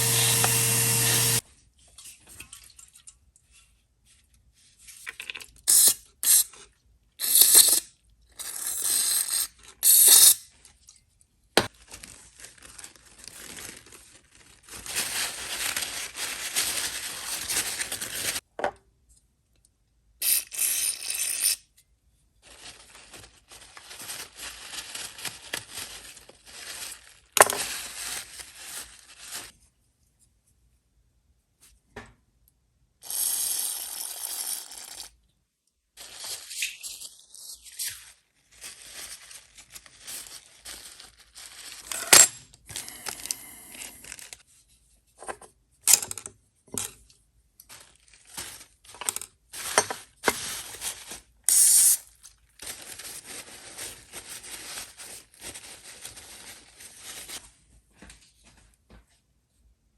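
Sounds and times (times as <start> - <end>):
metal parts scraping and rustling: 41.8 - 44.3
metal tools clicking and clinking: 41.9 - 42.4.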